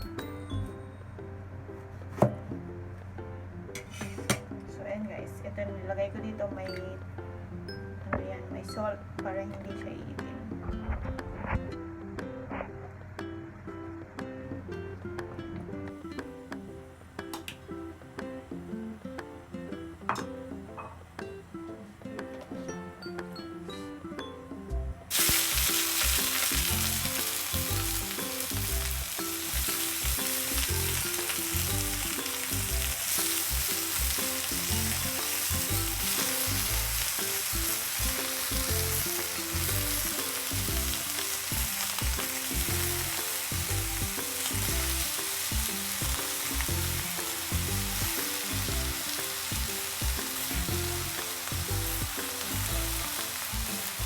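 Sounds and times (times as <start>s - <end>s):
food sizzling in a pan: 25.1s - 54.0s.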